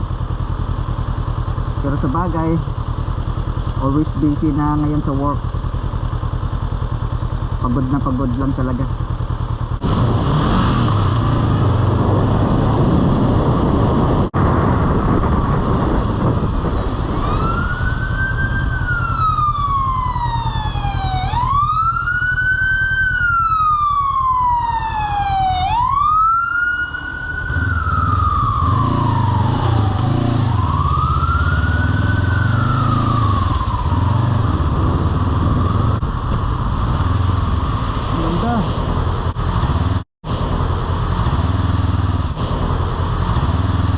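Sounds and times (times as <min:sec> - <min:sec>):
motorcycle engine: 0:00.0 - 0:43.9
emergency vehicle siren wailing: 0:14.5 - 0:36.8.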